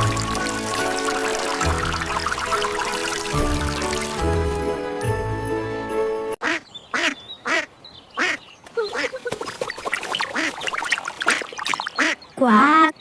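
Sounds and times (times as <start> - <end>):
background music: 0.0 - 6.4
duck quacks: 6.4 - 9.4, 12.0 - 12.2.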